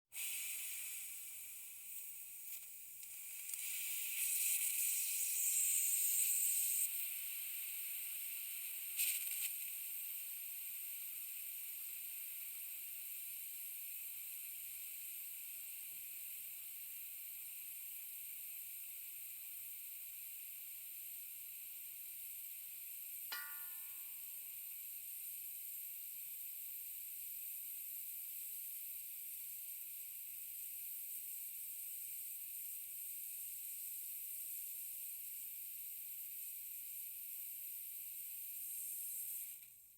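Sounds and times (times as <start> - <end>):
compressed air hissing: 0.2 - 7.7
short metallic ring: 23.3 - 24.2.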